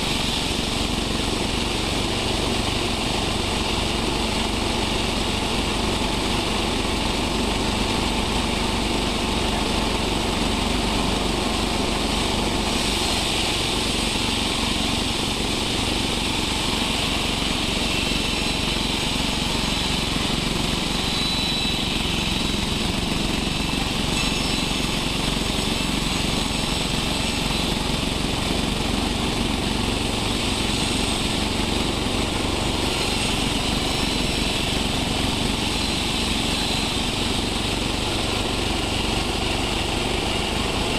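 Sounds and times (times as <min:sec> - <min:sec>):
sawmill machine drone: 0:00.0 - 0:40.9
faint high whine: 0:11.7 - 0:28.2.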